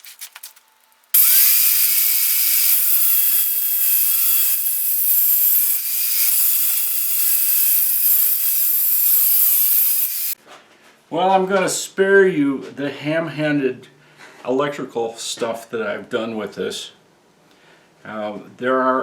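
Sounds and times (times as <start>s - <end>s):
power tool motor whine: 1.2s - 10.4s
rasping cutting hiss on wood: 1.2s - 10.4s.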